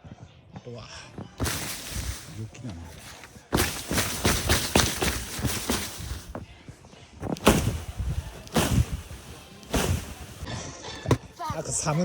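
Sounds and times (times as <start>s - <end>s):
footsteps crunching in snow: 1.1s - 12.0s.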